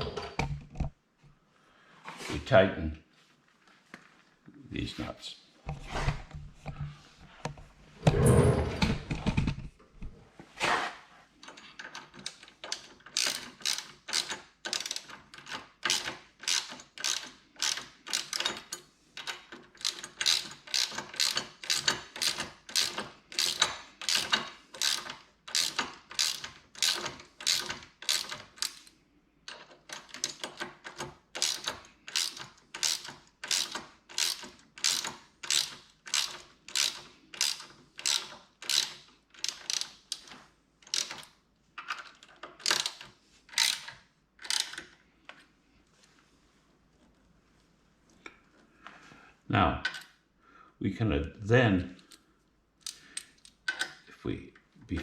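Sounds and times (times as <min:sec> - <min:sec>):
tool handling clunk: 0:00.0 - 0:00.9
ratchet wrench clicking: 0:12.2 - 0:18.6, 0:19.8 - 0:28.9, 0:31.4 - 0:40.3, 0:40.9 - 0:41.2, 0:42.6 - 0:44.8.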